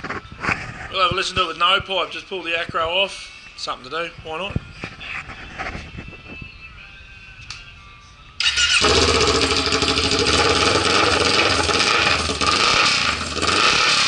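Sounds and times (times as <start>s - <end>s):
motorcycle engine running loudly: 8.4s - 14.0s.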